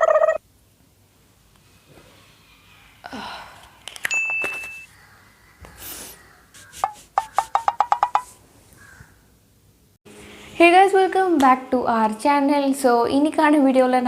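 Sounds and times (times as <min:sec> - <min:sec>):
glassy clinks with high ding: 0:04.1 - 0:04.9
quick run of short pops: 0:06.6 - 0:08.4.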